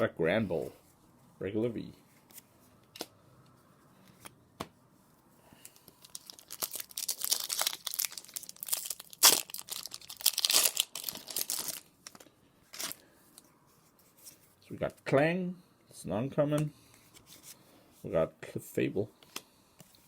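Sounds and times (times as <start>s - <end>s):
foil wrapper tearing and crinkling: 6.0s - 12.2s.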